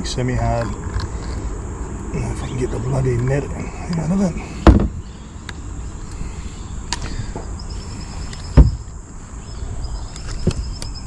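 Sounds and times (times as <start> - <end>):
steady low rumble: 0.0 - 10.9
loud thump on boat: 4.6 - 5.0, 8.6 - 8.8.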